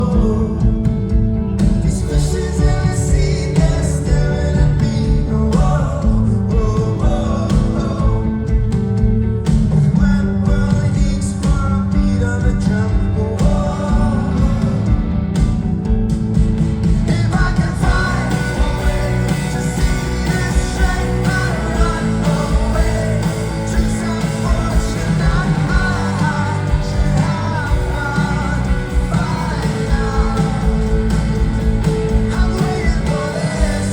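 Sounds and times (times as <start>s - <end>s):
rock band playing live: 0.0s - 33.9s
person singing: 1.8s - 8.7s, 17.1s - 33.9s.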